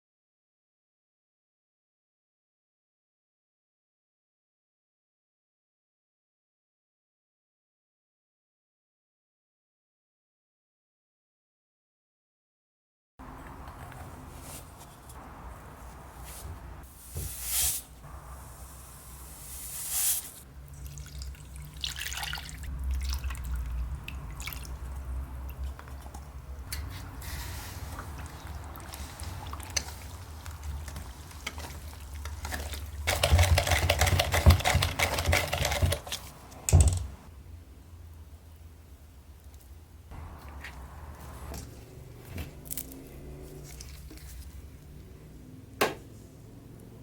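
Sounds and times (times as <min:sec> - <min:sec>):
water splashing and dripping: 0:20.4 - 0:37.2.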